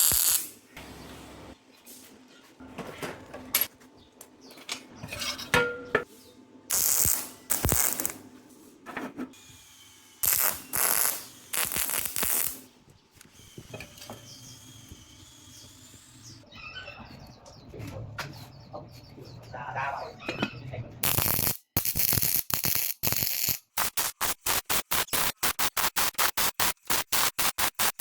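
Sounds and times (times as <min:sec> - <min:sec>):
short hissing bursts: 0:10.2 - 0:12.6.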